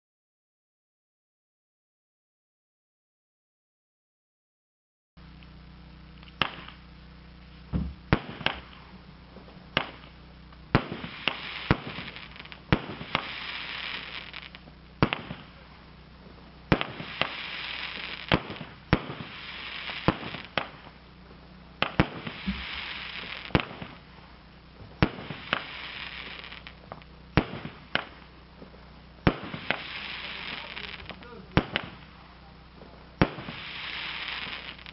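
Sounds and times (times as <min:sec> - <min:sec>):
high firework hiss: 0:05.3 - 0:34.9
firework launch and burst reports: 0:10.7 - 0:14.4, 0:15.0 - 0:15.8, 0:29.2 - 0:32.4, 0:33.2 - 0:34.9.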